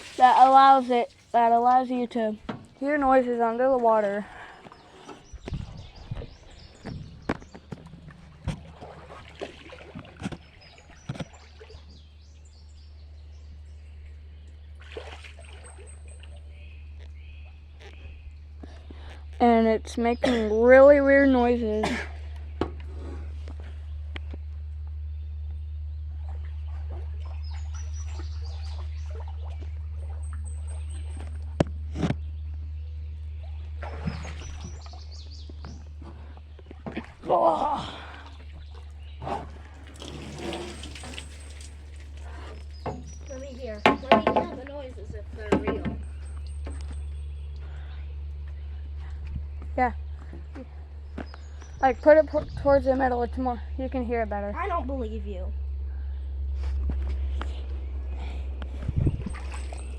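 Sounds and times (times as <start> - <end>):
low underwater hum: 0.0 - 59.9
hydrophone handling knocks: 5.1 - 9.0, 42.6 - 46.9
faint high chirps and squeaks: 15.5 - 21.2, 40.1 - 48.7.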